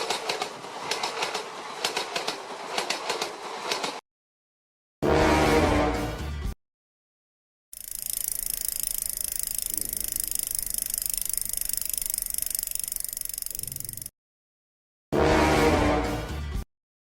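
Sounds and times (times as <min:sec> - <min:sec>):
fast mechanical rattle: 0:07.8 - 0:14.1.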